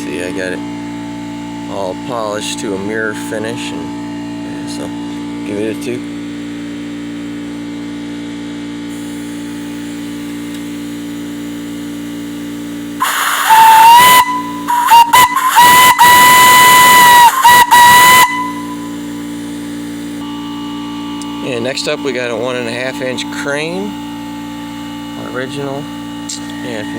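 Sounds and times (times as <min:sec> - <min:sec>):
whistle blowing: 0:13.0 - 0:19.0.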